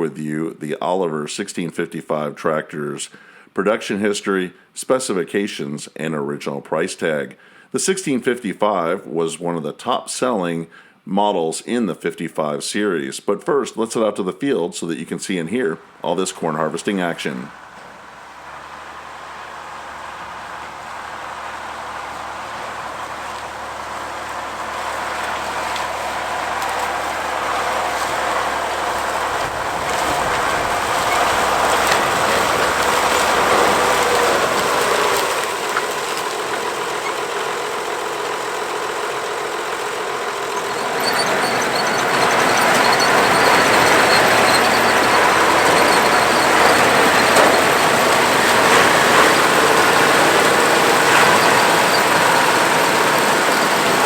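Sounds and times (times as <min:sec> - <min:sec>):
tractor engine: 0:14.9 - 0:54.0
corn picker clattering: 0:17.6 - 0:54.0.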